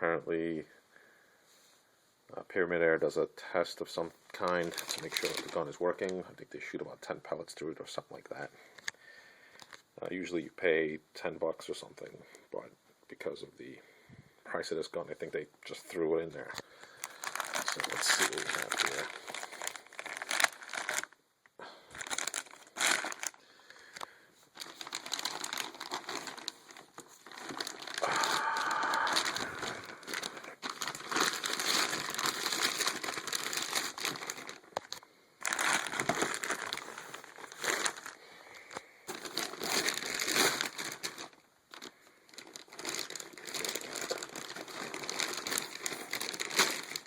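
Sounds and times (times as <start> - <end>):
packaging crinkling and rustling: 4.3 - 6.3, 16.4 - 21.2, 21.9 - 47.0.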